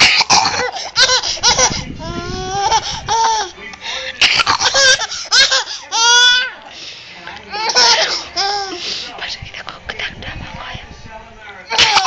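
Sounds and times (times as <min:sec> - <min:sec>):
baby laughing: 0:00.0 - 0:03.5, 0:04.2 - 0:06.5, 0:07.5 - 0:08.8, 0:11.7 - 0:12.0
baby gasping: 0:00.0 - 0:06.1.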